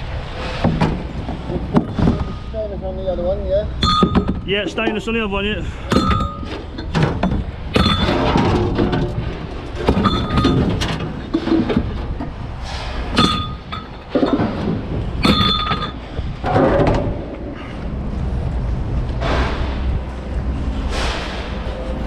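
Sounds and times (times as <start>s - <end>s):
steady low rumble: 0.0s - 22.0s
scrap metal clanking onto metal: 5.8s - 17.7s.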